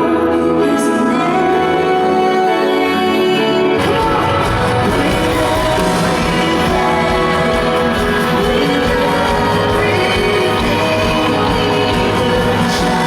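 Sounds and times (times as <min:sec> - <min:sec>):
full band music: 0:00.0 - 0:13.0
bass: 0:03.7 - 0:13.0
drums: 0:03.8 - 0:13.0.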